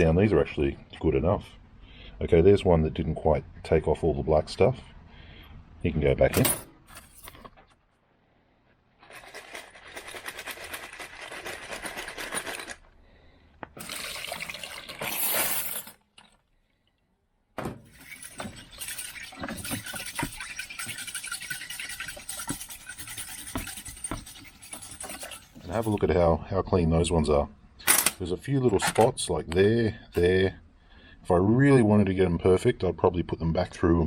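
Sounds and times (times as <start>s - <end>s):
keys clinking in water: 17.8s - 26.0s.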